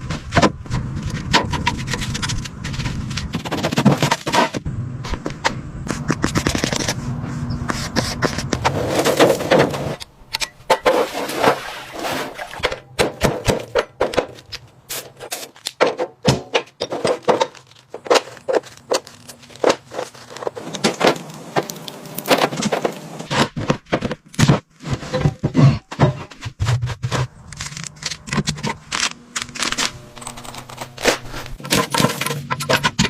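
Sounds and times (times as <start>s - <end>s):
metal parts and tools clanking: 8.1s - 23.4s, 27.5s - 33.0s.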